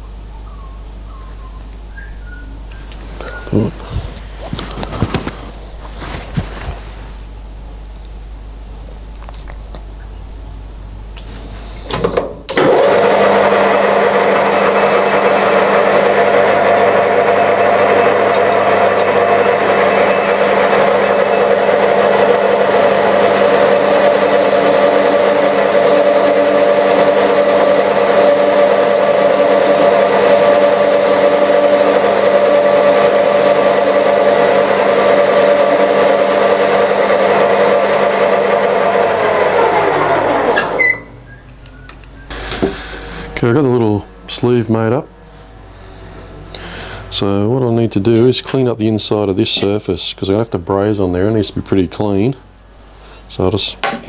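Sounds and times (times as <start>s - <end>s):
electric motor whining: 12.6s - 41.6s, 42.2s - 47.1s.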